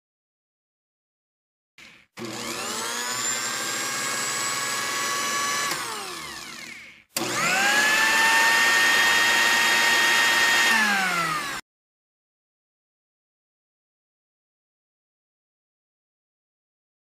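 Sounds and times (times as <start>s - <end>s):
electric blender motor whining: 1.8s - 11.6s.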